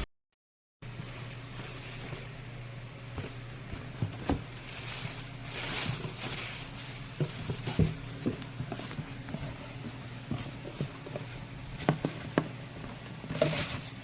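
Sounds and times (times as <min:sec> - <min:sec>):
steady low hum: 0:00.8 - 0:14.0
plastic fan clicks and knocks: 0:10.2 - 0:13.7.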